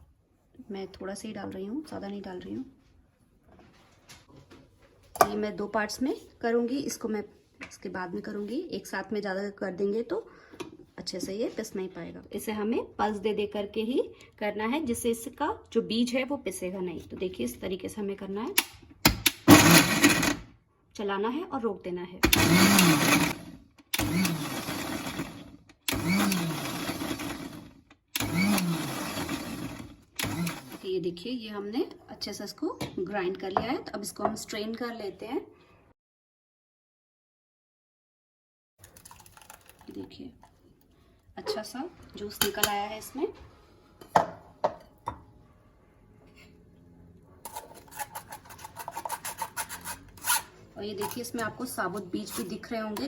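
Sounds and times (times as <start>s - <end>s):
mixer grinder motor whine: 19.4s - 20.4s, 22.2s - 30.8s
spoon scraping strainer: 47.5s - 53.0s.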